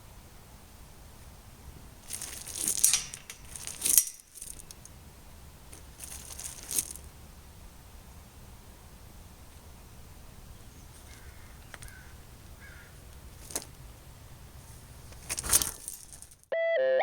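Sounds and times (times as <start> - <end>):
crinkling rustling noise: 1.0 - 7.2, 10.6 - 16.5.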